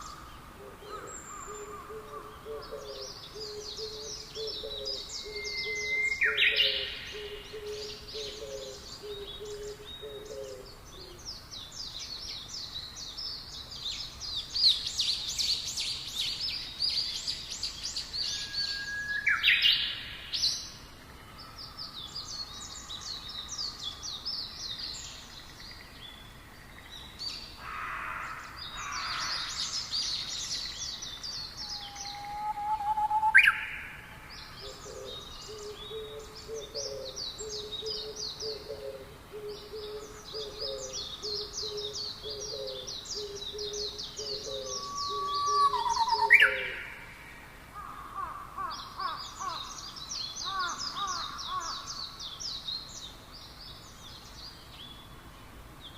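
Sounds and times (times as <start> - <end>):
low hooting bird call: 0.0 - 11.2, 31.6 - 49.8
birds chirping and trilling: 0.0 - 55.9
loud upward-sweeping bird calls: 31.7 - 35.0, 44.2 - 49.8.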